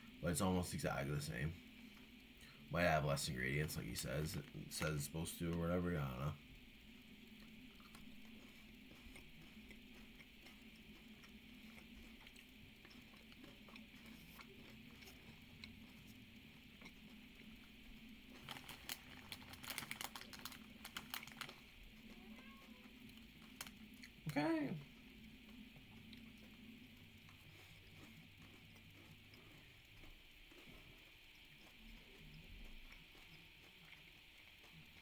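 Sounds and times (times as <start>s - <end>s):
faint steady hum: 0.0s - 35.0s
crackling clicks from eating chocolate: 3.5s - 6.2s, 6.8s - 35.0s.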